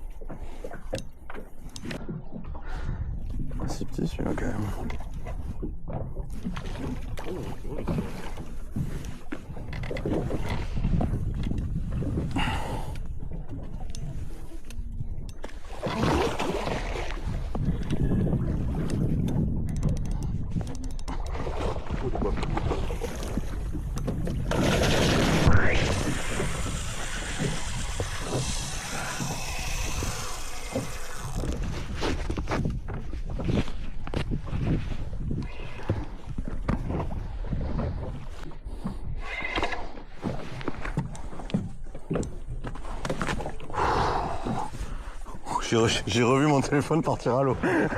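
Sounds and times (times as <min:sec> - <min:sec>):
water against boat hull: 0:00.0 - 0:47.9
wind buffeting microphone: 0:02.0 - 0:39.5
brief hissing rush: 0:25.3 - 0:31.5.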